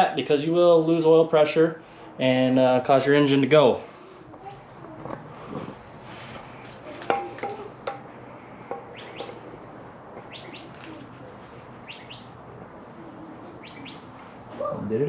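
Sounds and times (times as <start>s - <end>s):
small bird chirping: 8.8s - 12.4s, 13.4s - 14.3s.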